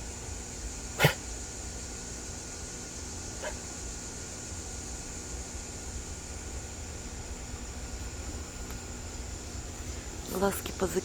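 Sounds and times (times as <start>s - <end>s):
dog coughing: 1.0s - 1.3s, 3.4s - 3.6s.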